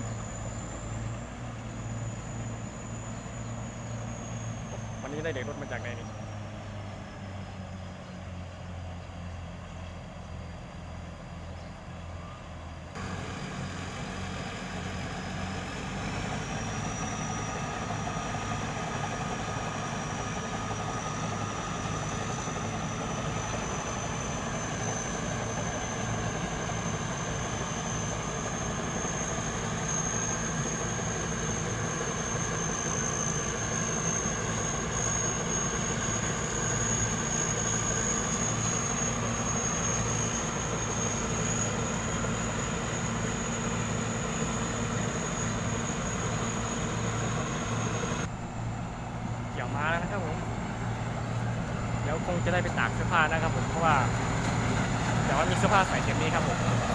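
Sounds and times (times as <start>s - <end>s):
combine harvester engine drone: 0.0s - 56.9s
high whine: 16.0s - 56.9s.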